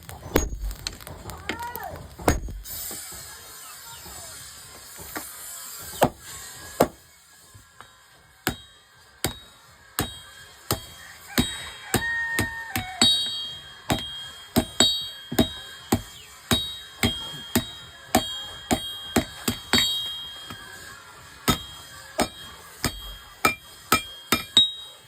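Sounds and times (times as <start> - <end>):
hammer striking metal: 2.2 - 3.0, 7.8 - 25.0.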